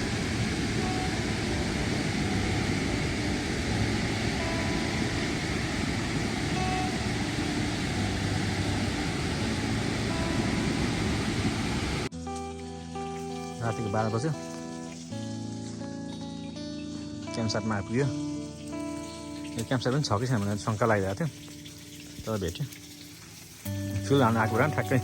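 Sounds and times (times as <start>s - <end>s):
waterfall roaring: 0.0s - 12.1s.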